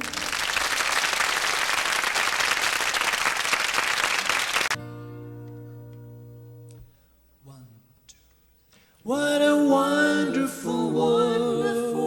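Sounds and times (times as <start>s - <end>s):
audience applauding: 0.0s - 4.8s.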